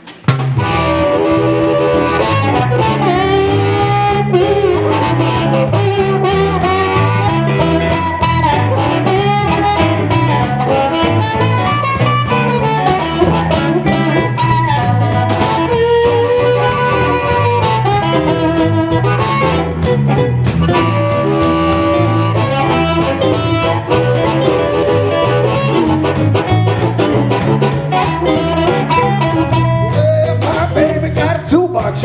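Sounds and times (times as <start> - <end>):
drums steady beat: 0.0 - 32.0
lead guitar bending notes: 0.2 - 31.6
bass line: 0.2 - 32.0.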